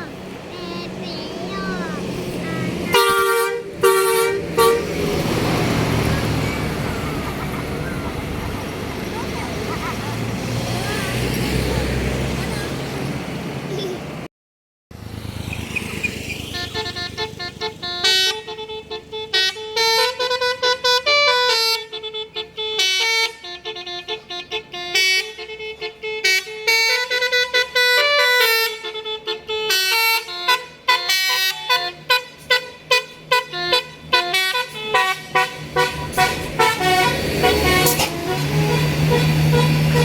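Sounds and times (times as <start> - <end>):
bus air horn playing a tune: 1.8 - 7.2, 16.5 - 40.0.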